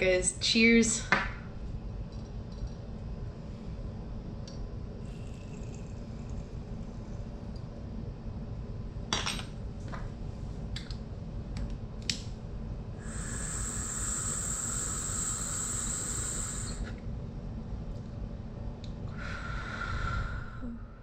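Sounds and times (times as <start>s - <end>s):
airy hissing with whistle: 13.0s - 16.9s.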